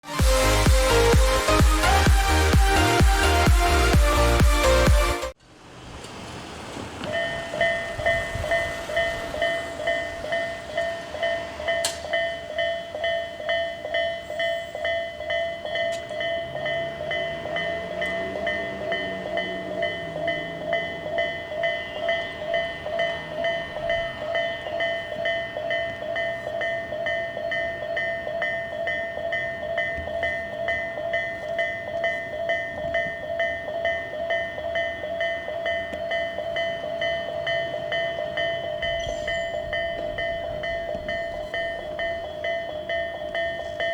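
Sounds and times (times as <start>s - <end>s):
passing train low hum: 0.2s - 43.9s
level-crossing alarm dinging: 7.0s - 43.9s.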